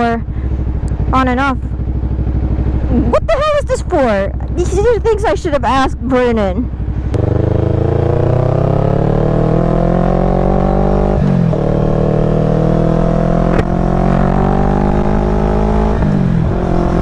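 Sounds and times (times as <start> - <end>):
motorcycle engine accelerating: 0.0 - 17.0.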